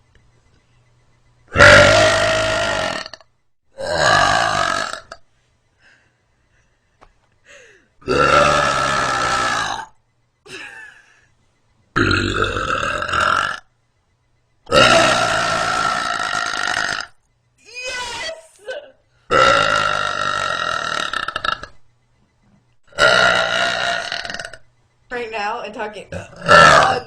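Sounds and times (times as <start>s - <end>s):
woman belching: 1.5s - 3.2s, 3.8s - 5.2s, 8.0s - 9.9s, 12.0s - 13.7s, 14.7s - 17.2s, 18.7s - 21.8s, 22.9s - 24.6s, 26.1s - 27.0s.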